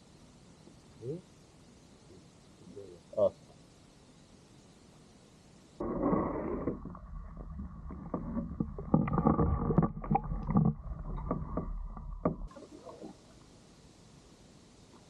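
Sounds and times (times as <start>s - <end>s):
faint steady hiss: 0.0s - 15.0s
low rumble: 5.8s - 12.5s
paddles knocking against hull: 5.8s - 12.5s.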